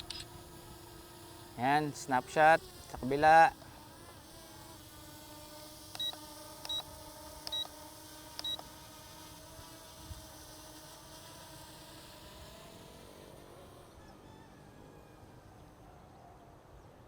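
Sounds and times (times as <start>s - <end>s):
drone motors humming: 0.0s - 15.9s
short beeps with clicks: 6.0s - 6.9s, 7.5s - 7.7s, 8.4s - 8.6s.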